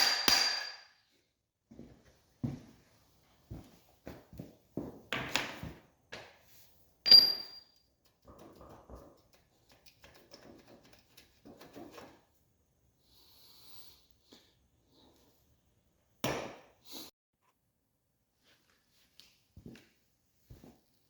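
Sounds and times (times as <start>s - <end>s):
ringing metal strike: 7.1s - 7.7s.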